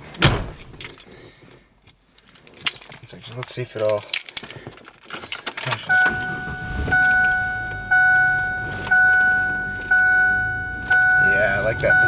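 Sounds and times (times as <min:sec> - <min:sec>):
keys jingling: 0:00.0 - 0:12.0
dashboard warning chime: 0:05.7 - 0:12.0
low engine rumble: 0:05.8 - 0:12.0.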